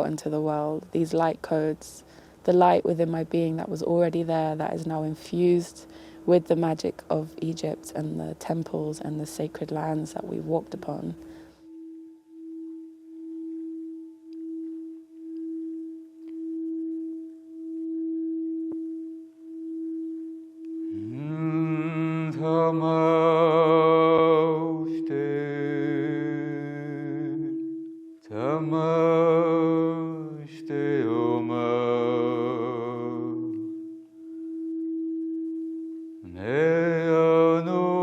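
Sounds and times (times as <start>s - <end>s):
voices toning held notes: 2.5s - 11.5s
singing bowl ringing: 2.6s - 38.0s.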